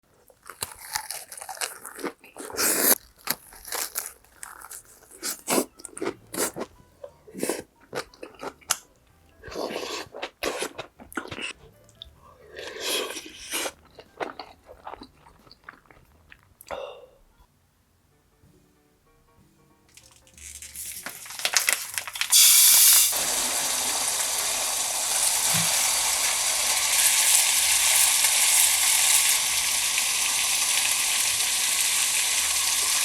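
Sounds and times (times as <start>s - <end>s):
person chewing with wet crunching: 0.1s - 16.8s.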